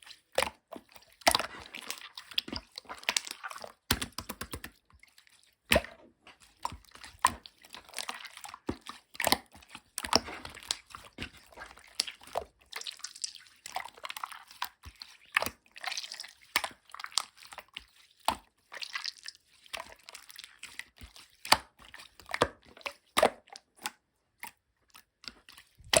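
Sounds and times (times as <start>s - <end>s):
slime squished by hand: 25.4s - 26.0s.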